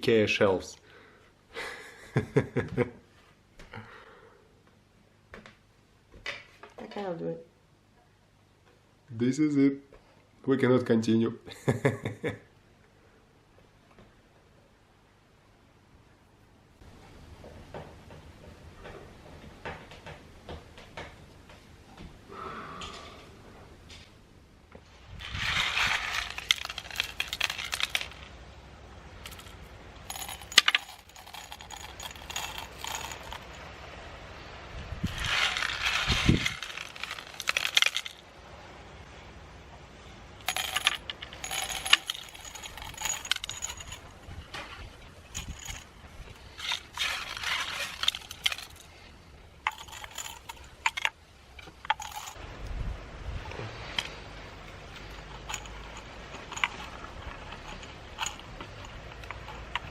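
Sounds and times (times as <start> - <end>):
scraping and rustling: 24.8 - 28.5, 29.2 - 33.8, 35.0 - 38.2, 40.4 - 52.4, 53.4 - 59.9
small hard objects clattering: 25.1 - 28.4, 29.2 - 33.8, 35.0 - 38.3, 40.4 - 52.4, 54.8 - 59.9.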